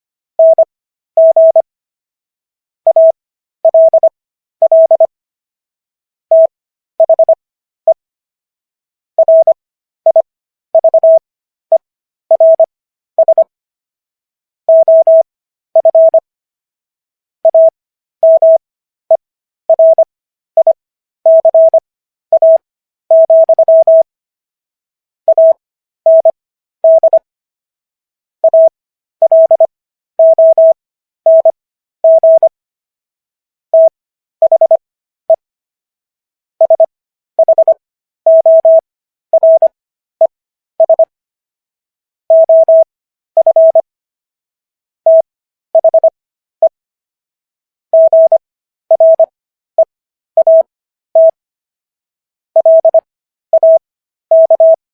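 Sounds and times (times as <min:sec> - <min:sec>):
morse code beeps: 0:00.4 - 0:01.6, 0:02.9 - 0:05.1, 0:06.3 - 0:08.0, 0:09.2 - 0:13.5, 0:14.7 - 0:16.2, 0:17.5 - 0:18.6, 0:19.7 - 0:24.1, 0:25.3 - 0:27.2, 0:28.4 - 0:32.5, 0:33.7 - 0:35.4, 0:36.6 - 0:41.1, 0:42.3 - 0:43.9, 0:45.1 - 0:46.8, 0:47.9 - 0:51.4, 0:52.6 - 0:54.8.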